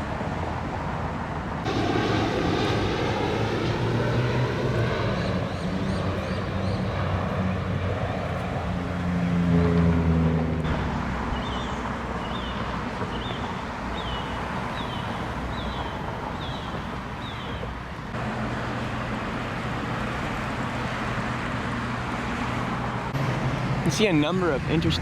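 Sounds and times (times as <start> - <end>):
loud passing vehicle: 0.0 - 17.0, 18.1 - 25.0
traffic noise: 0.0 - 25.0.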